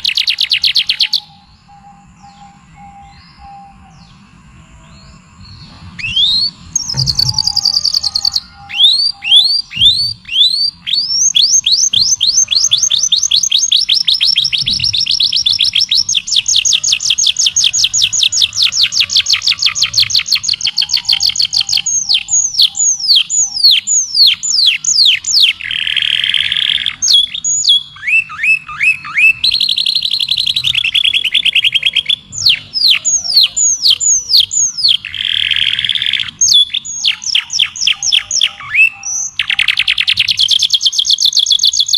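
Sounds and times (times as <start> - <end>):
songbird singing: 0.0 - 41.9.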